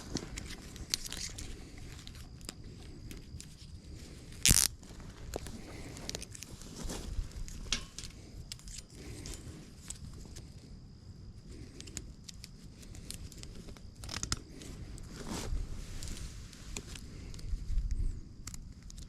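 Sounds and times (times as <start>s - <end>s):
rustling of cable ties: 0.0s - 10.5s, 11.5s - 19.0s
sharp clicks of cable ties: 11.7s - 14.5s.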